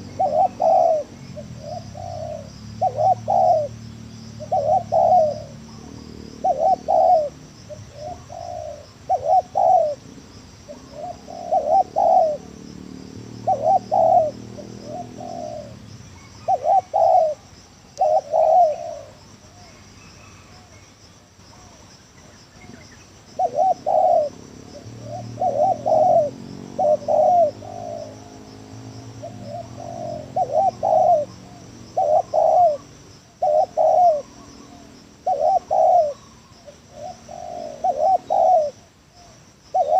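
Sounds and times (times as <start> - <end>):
dove cooing: 0.0 - 20.8, 21.5 - 39.9
insects buzzing: 0.0 - 39.9.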